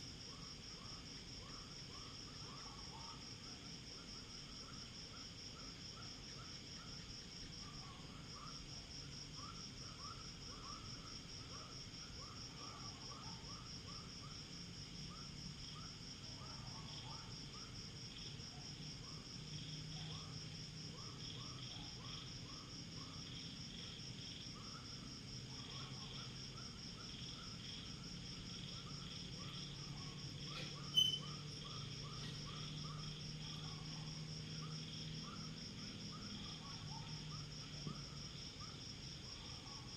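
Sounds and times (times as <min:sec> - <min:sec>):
crickets trilling: 0:00.0 - 0:39.9
short repeated insect chirps: 0:25.8 - 0:37.5.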